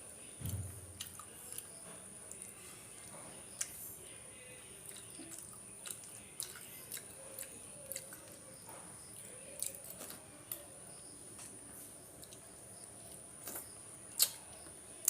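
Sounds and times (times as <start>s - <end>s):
person chewing food: 1.0s - 3.8s, 4.8s - 10.6s, 12.1s - 12.5s, 13.1s - 14.6s
wet mouth clicks and squishes: 14.2s - 14.4s.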